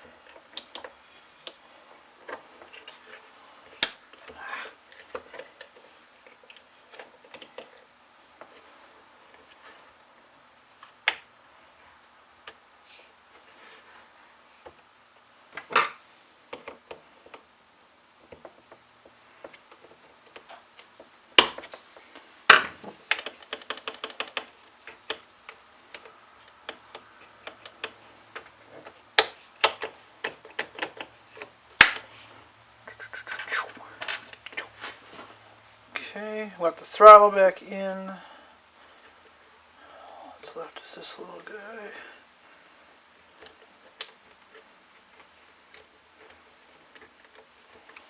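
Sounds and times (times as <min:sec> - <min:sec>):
clicks and taps of parts handled: 0:00.6 - 0:00.9, 0:06.5 - 0:07.8, 0:22.5 - 0:28.5, 0:29.2 - 0:32.1
rattle of clicks: 0:00.6 - 0:00.9, 0:07.3 - 0:07.8, 0:23.1 - 0:25.2, 0:26.5 - 0:28.0, 0:29.2 - 0:29.9.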